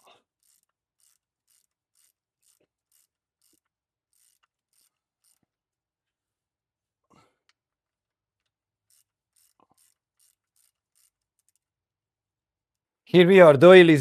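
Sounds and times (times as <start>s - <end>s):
ratchet wrench clicking: 0.4s - 5.5s, 8.9s - 11.7s.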